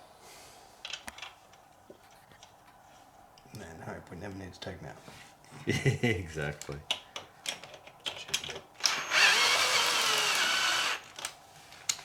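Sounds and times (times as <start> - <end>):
cordless drill whining: 8.8 - 11.1.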